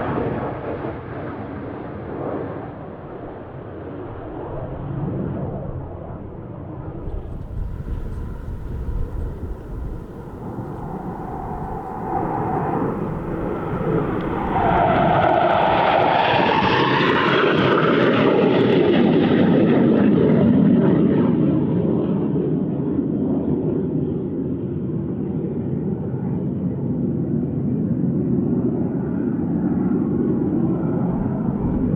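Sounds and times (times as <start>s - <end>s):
military aircraft low pass: 5.2s - 22.4s, 28.1s - 31.9s.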